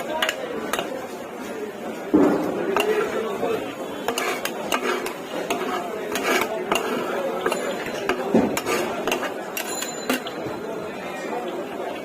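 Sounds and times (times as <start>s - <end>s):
metal utensils clanking on pan: 0.0s - 1.0s, 2.3s - 10.6s
murmur of voices: 0.0s - 12.0s.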